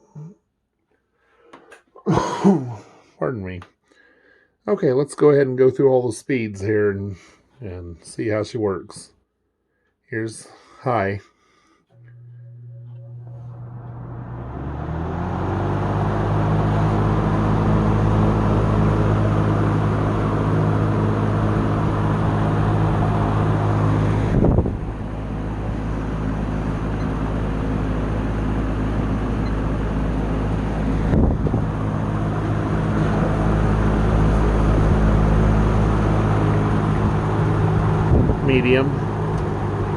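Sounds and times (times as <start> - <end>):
box fan motor humming: 11.9 - 39.9
rush of air: 24.0 - 25.0.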